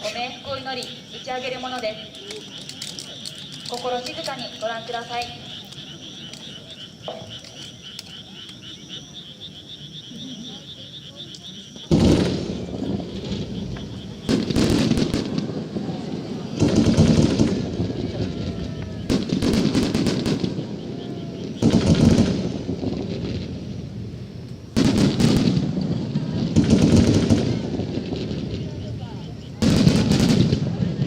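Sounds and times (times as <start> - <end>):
firework shells booming: 11.8 - 31.0.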